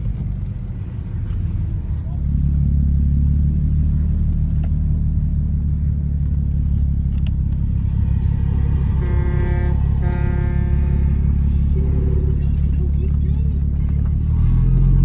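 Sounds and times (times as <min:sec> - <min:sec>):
car engine and road rumble: 0:00.0 - 0:15.0
horn-like tones: 0:07.8 - 0:12.7.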